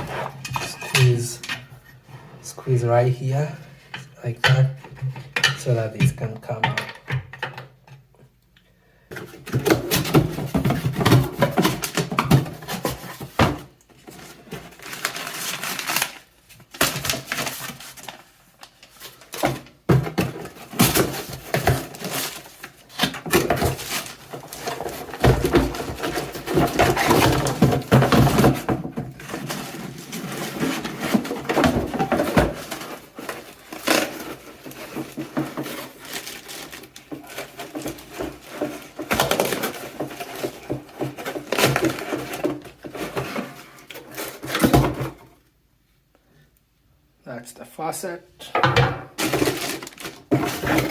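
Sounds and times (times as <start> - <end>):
metal and plastic parts clattering: 9.1 - 45.3, 48.6 - 50.9.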